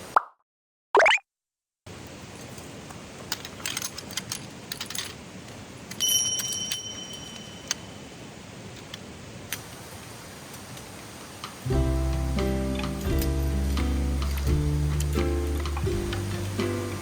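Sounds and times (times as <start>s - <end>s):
small metal objects clinking: 5.9s - 7.9s
loud ringing metallic clink: 6.0s - 8.0s.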